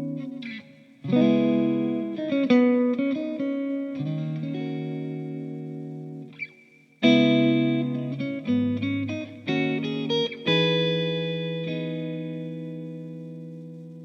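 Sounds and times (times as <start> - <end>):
electric guitar chords and notes: 0.0 - 14.0.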